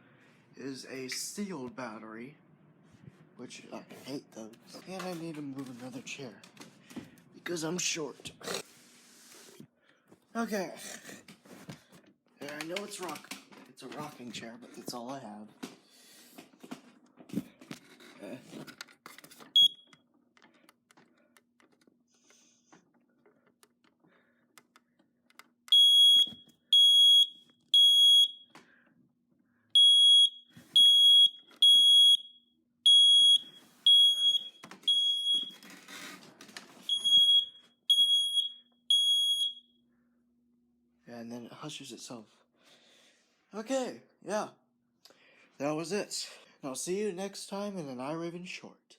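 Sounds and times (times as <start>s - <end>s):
smoke detector alarm beeps: 19.6s - 20.0s, 25.7s - 28.6s, 29.8s - 35.6s, 36.9s - 39.8s.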